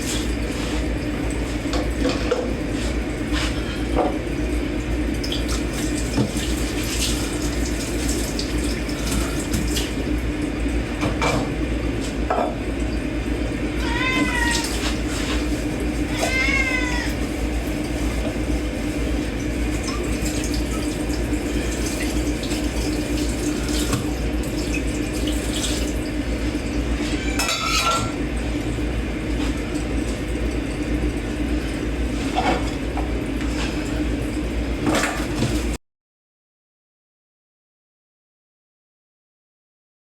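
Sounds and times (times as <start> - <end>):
tap water running: 0.0 - 35.8
dishes and cutlery clinking: 27.4 - 28.2.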